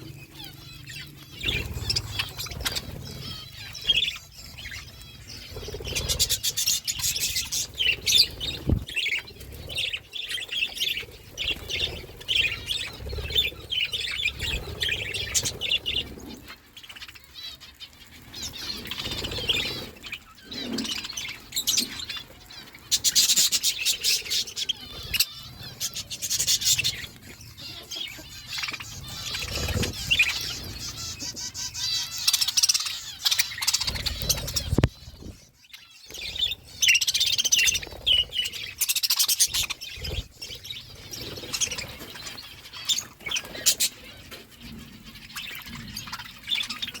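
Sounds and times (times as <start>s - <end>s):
budgerigars chirping and chattering: 0.0s - 47.0s.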